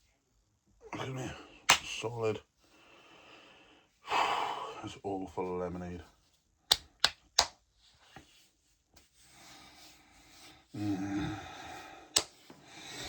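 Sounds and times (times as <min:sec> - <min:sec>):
sharp slap: 0:01.7 - 0:02.0.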